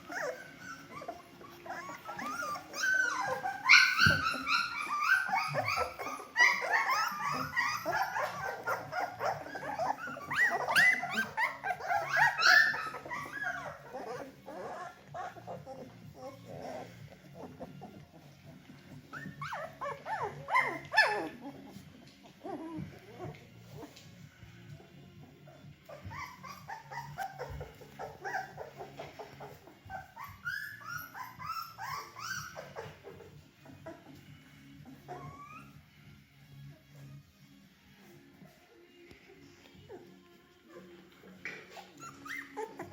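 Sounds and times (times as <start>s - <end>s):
puppies whimpering and yipping: 0.0s - 42.9s.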